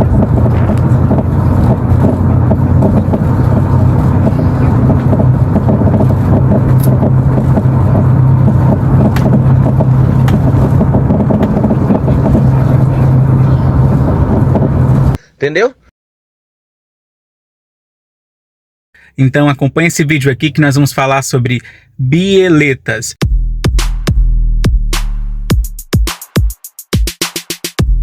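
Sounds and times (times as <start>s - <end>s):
suspension knocking and rattling: 0.0s - 15.2s
engine and road noise: 0.0s - 15.3s.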